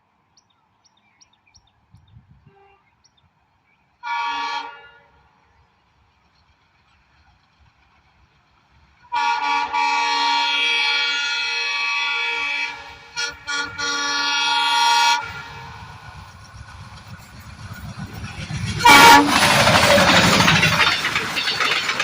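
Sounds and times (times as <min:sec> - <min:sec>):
engine and track noise: 0:00.1 - 0:22.0
train rumble: 0:01.7 - 0:22.0
locomotive air horn: 0:02.4 - 0:02.8, 0:04.0 - 0:05.3, 0:09.1 - 0:16.0, 0:18.8 - 0:19.7.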